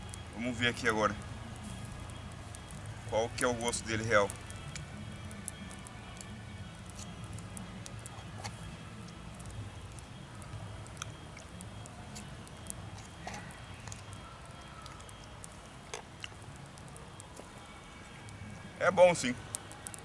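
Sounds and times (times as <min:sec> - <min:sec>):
low steady rumble: 0:00.0 - 0:14.6
campfire crackling: 0:00.0 - 0:20.0
person chewing: 0:13.0 - 0:14.1, 0:14.9 - 0:16.4.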